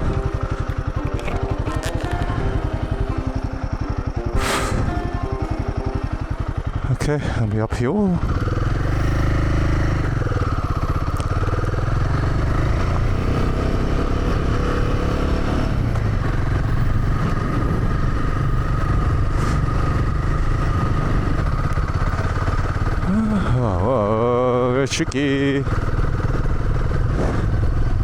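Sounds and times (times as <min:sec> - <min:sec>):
motorcycle engine under load: 0:00.0 - 0:28.0.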